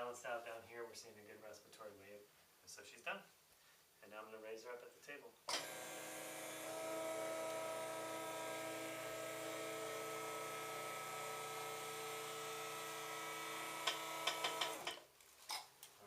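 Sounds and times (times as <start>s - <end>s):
electric lift motor humming: 5.5s - 15.0s.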